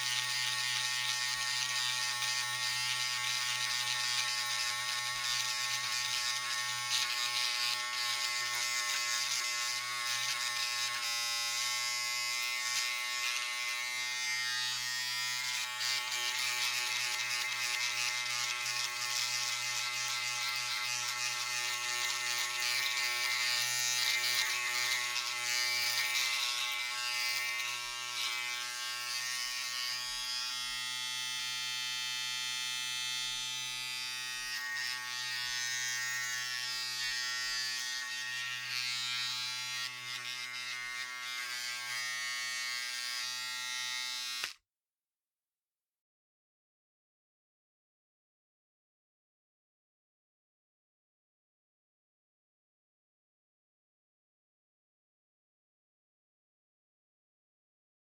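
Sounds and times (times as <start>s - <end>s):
electric razor buzzing: 0.0s - 44.6s.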